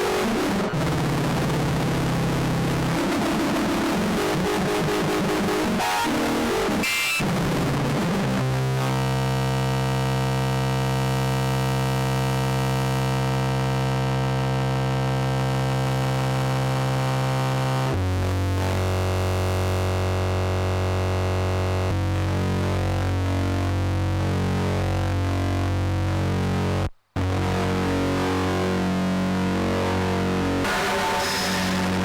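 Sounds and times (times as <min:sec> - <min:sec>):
heavy bass: 0:00.0 - 0:13.7, 0:16.3 - 0:32.0
synthesizer drone: 0:26.0 - 0:32.0.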